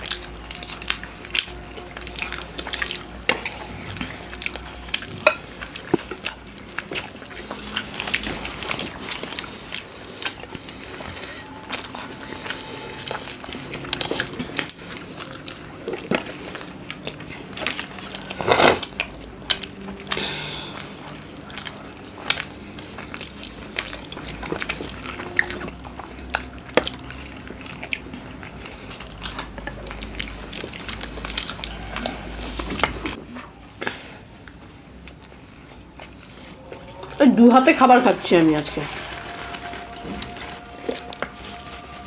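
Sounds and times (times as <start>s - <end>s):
people chewing: 0.0s - 42.0s
small clicks and crackles: 38.6s - 41.5s.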